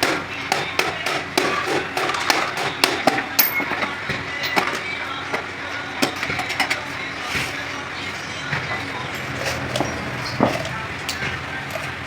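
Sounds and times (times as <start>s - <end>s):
hand tools tapping: 0.0s - 4.8s, 8.6s - 12.0s
steady background noise: 0.0s - 12.0s.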